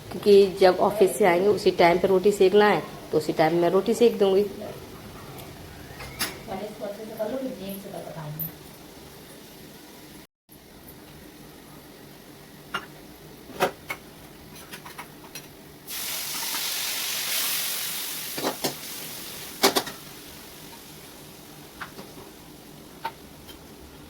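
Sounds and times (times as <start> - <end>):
vegetables sizzling in hot oil: 15.9 - 23.8.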